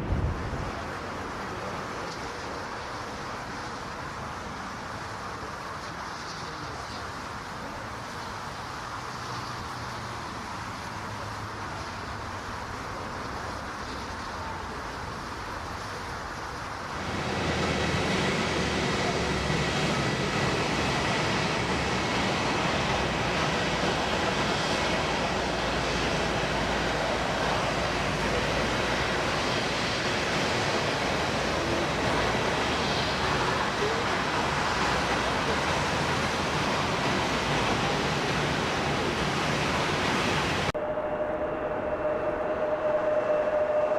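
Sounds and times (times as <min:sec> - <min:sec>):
jet engines running: 0:00.0 - 0:43.9.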